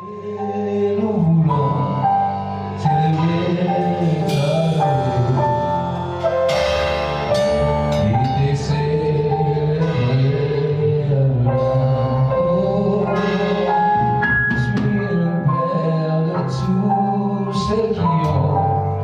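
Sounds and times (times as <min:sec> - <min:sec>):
steady bass line: 0:00.0 - 0:19.0
sustained keyboard chords: 0:00.0 - 0:19.0
cymbal crashes: 0:06.3 - 0:10.6, 0:13.1 - 0:15.2.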